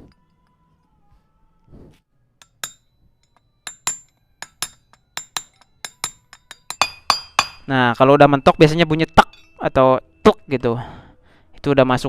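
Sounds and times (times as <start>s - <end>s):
hammer tapping metal: 2.4s - 8.0s, 8.9s - 9.6s.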